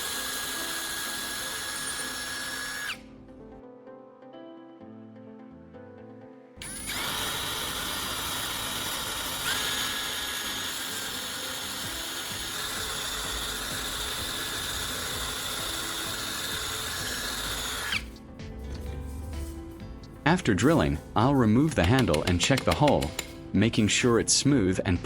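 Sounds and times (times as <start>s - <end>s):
electric drill boring into wood: 0.0s - 3.1s, 6.6s - 18.2s.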